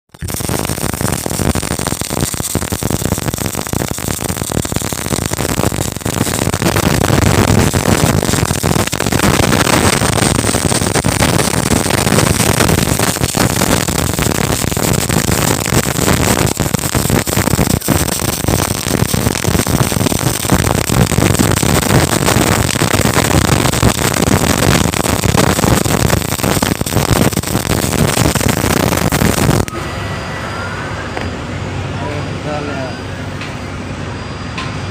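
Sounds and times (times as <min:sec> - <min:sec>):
welding arc crackling: 0:00.0 - 0:29.7.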